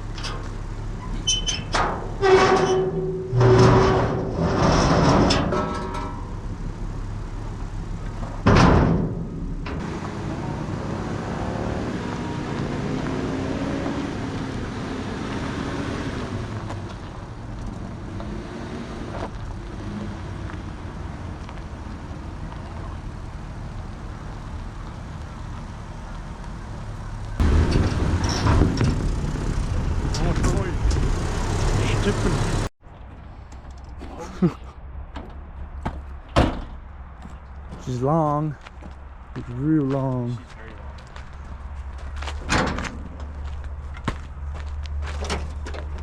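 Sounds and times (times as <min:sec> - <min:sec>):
car engine running: 0:26.8 - 0:32.7.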